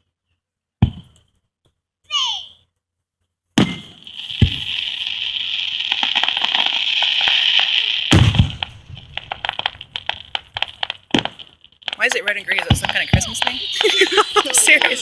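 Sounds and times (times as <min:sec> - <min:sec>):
firework shells booming: 0:03.6 - 0:15.0
fireworks crackling: 0:03.6 - 0:15.0
firework hissing: 0:03.9 - 0:15.0.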